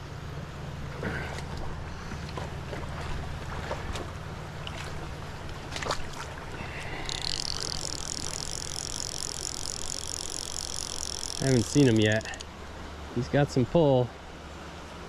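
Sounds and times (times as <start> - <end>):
stream water running: 0.2 - 15.0
high-pitched buzz: 6.9 - 12.5.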